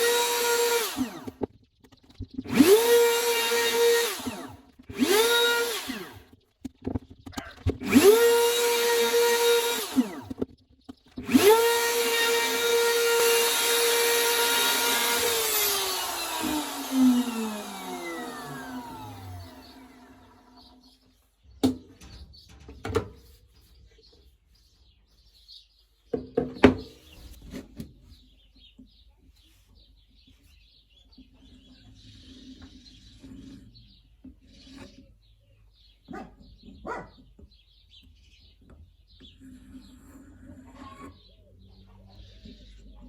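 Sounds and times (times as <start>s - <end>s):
small birds chirping: 0.0s - 43.0s
wood and tools knocking: 26.1s - 27.9s.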